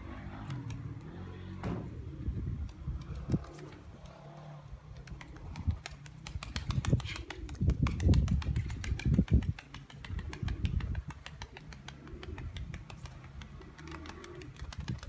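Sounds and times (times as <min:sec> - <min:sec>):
pigeons cooing: 0:00.0 - 0:15.0
loud low thumps: 0:01.6 - 0:02.1.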